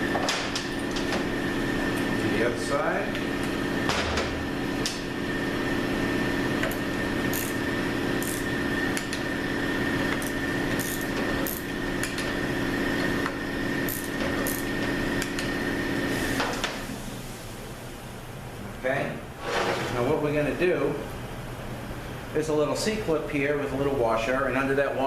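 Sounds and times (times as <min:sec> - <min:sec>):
steady hum: 0:00.0 - 0:25.0
torque wrench clicks: 0:07.3 - 0:07.6
wrench ratcheting: 0:07.3 - 0:07.6.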